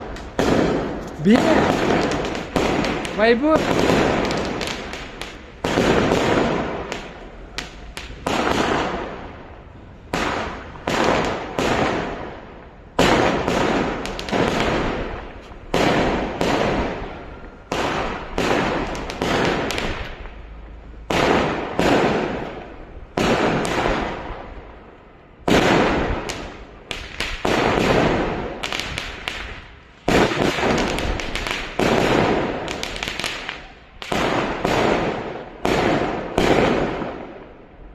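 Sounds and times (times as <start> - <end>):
fireworks bangs: 0.0 - 37.7.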